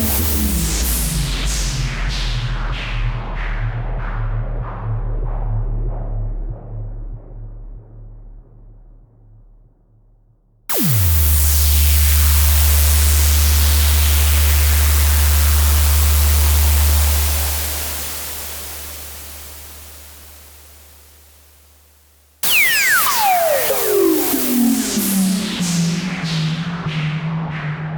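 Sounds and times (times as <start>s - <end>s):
deep low drone: 10.7s - 21.7s
impact hit dropping in pitch: 22.4s - 27.9s.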